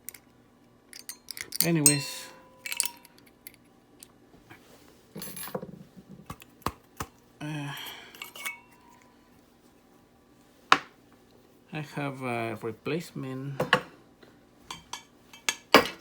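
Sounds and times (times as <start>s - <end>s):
metal parts clinking: 0.9s - 3.6s, 7.8s - 8.9s.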